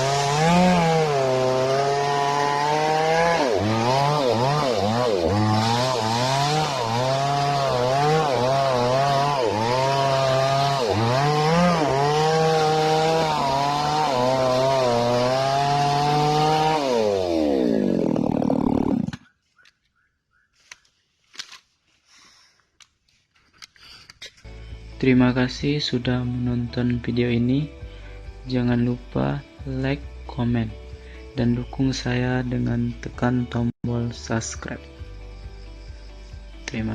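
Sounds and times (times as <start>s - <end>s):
chainsaw engine revving: 0.0s - 19.3s.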